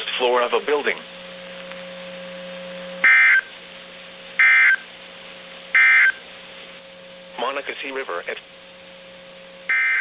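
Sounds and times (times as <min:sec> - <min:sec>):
faint steady hum: 0:00.0 - 0:10.0
buzzy digital data tones: 0:03.0 - 0:03.5, 0:04.4 - 0:04.9, 0:05.7 - 0:06.2.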